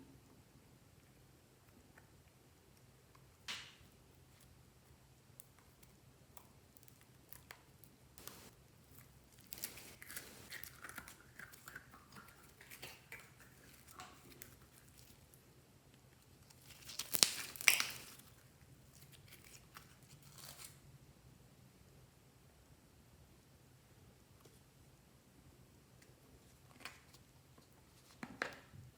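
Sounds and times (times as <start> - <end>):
sharp crackling pops: 8.2 - 8.5, 9.4 - 10.6, 16.9 - 18.2
slime squished by hand: 9.4 - 10.9, 16.6 - 18.3.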